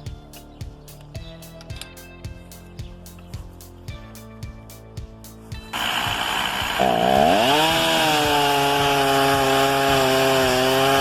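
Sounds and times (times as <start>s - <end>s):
chainsaw engine revving: 5.7s - 11.0s.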